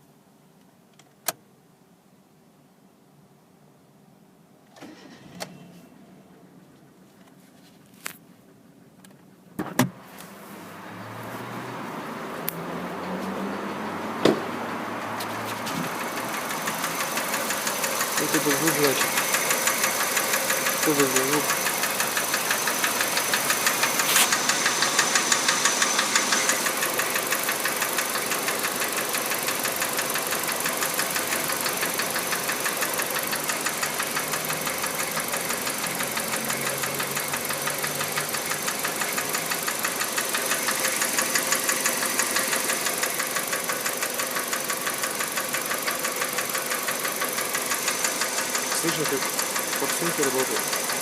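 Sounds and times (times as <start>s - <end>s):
car engine idling with ticking knock: 13.8s - 51.0s.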